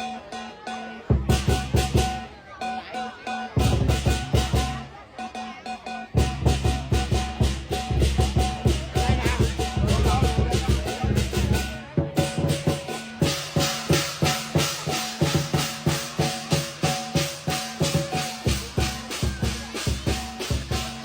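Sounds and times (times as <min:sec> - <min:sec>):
shaker-like percussion: 0:00.0 - 0:21.0
rhythmic music with steady beat: 0:01.2 - 0:21.0.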